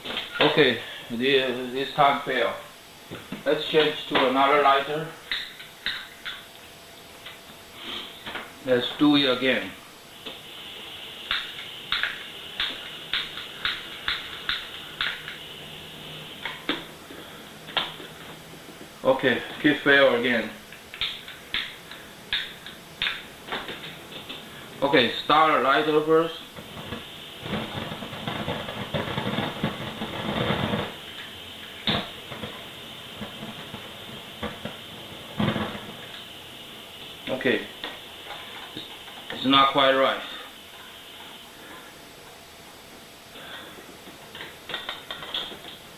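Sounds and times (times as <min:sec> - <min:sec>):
torch lighter flame hissing: 0:09.4 - 0:42.0.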